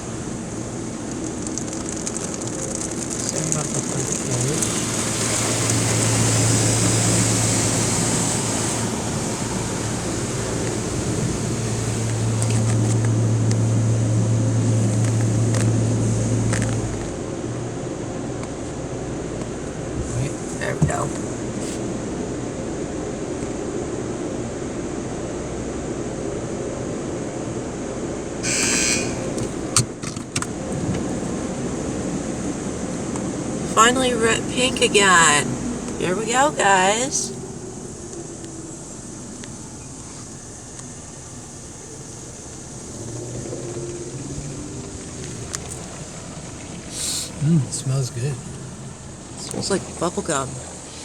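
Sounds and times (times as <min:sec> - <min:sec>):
car wash rushing noise: 0:00.0 - 0:51.0
sharp clicks: 0:00.9 - 0:06.1
short hissing burst: 0:28.4 - 0:29.7, 0:46.9 - 0:47.4.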